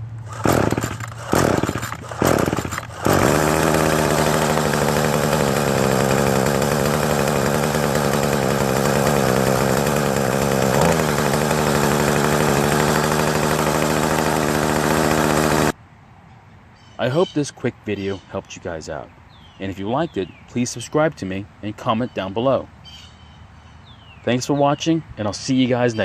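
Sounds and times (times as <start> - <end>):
string trimmer engine idling: 0.0 - 15.8.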